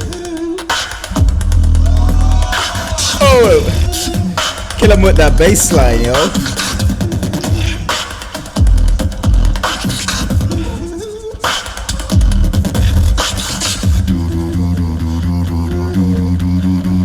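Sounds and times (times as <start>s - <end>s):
beatboxing: 0.0s - 17.0s
humming vocal bass line: 1.2s - 6.8s, 13.8s - 17.0s.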